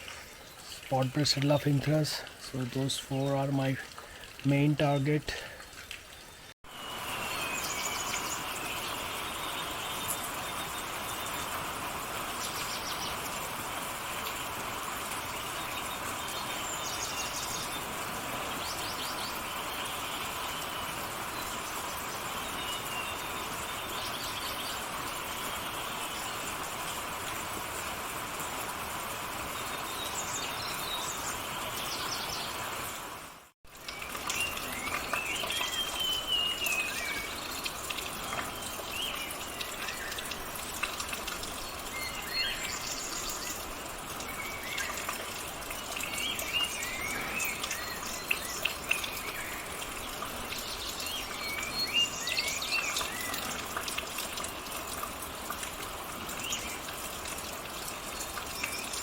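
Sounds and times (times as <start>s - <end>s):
rain hissing: 0.0s - 59.0s
birds chirping and whistling: 34.2s - 37.5s, 50.5s - 53.5s.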